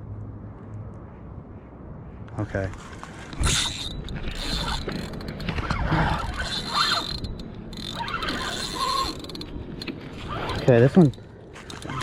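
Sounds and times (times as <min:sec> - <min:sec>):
fishing reel ratcheting: 0:03.4 - 0:12.0.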